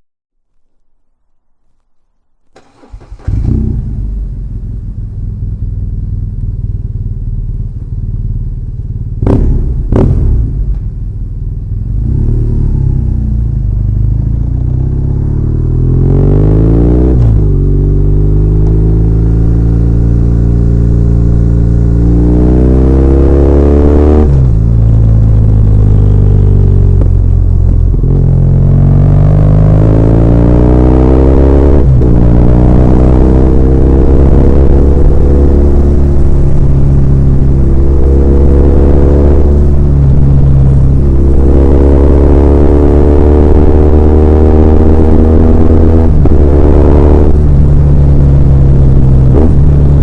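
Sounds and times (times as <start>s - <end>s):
motorcycle engine starting and idling: 2.4s - 15.9s
motorcycle accelerating through gears: 2.6s - 50.0s.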